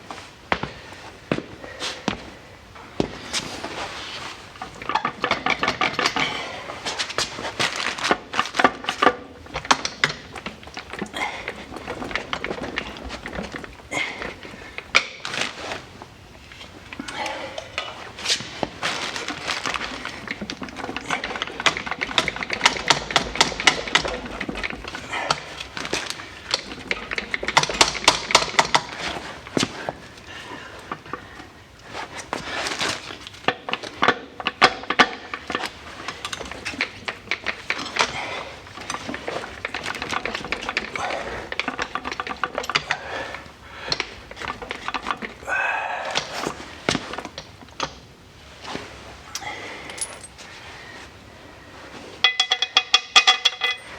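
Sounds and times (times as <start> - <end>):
metal tools clinking and rattling: 33.5 - 45.4, 49.3 - 50.5, 52.2 - 53.9.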